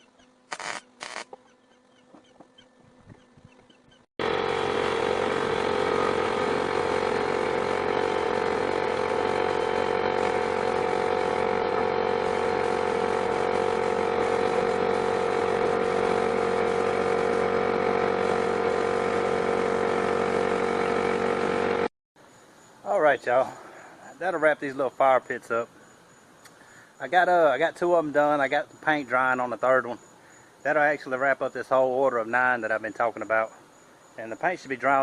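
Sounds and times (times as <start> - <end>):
machine drone humming: 2.8 - 21.9.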